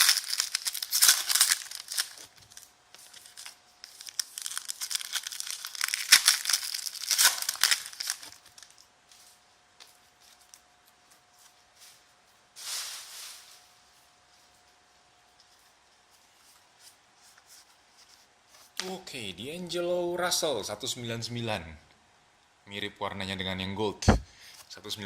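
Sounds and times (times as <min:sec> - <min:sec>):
wrapper tearing and crinkling: 0:00.0 - 0:08.9.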